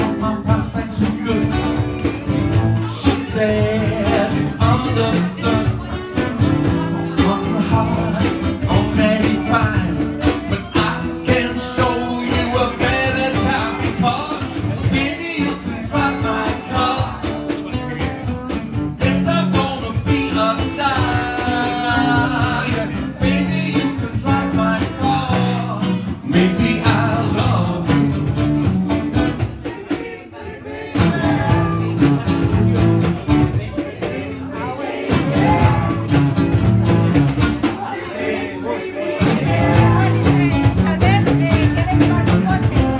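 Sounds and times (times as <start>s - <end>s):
person singing: 0.0s - 28.1s, 38.6s - 42.9s
electric guitar: 39.3s - 42.9s.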